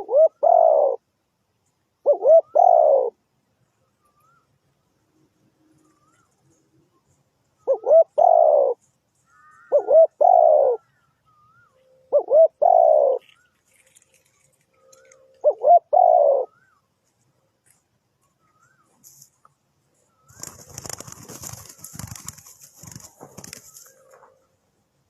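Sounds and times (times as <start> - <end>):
dove cooing: 0.0 - 1.0, 2.0 - 3.2, 7.6 - 8.8, 9.4 - 13.4, 14.8 - 16.8
faint bird chirping: 0.0 - 25.0.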